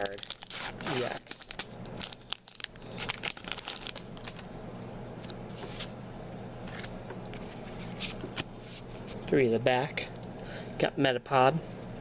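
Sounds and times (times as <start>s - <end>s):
foil wrapper crinkling and tearing: 0.0s - 4.4s.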